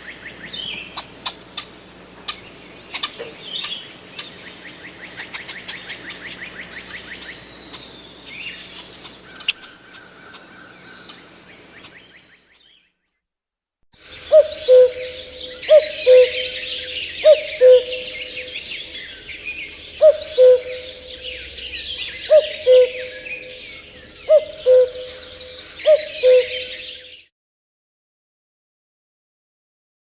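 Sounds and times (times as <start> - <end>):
small birds chirping: 0.0 - 13.0, 14.0 - 27.3
bird two-note hoot: 14.0 - 27.2.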